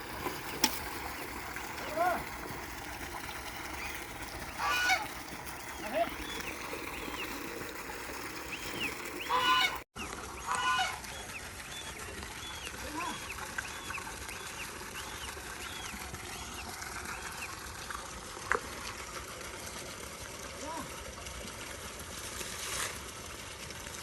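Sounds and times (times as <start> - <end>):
harsh bird calls: 8.4 - 9.8.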